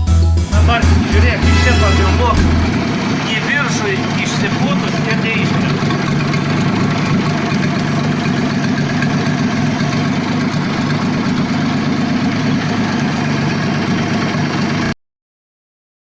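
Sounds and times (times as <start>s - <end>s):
truck engine idling: 0.0s - 15.0s.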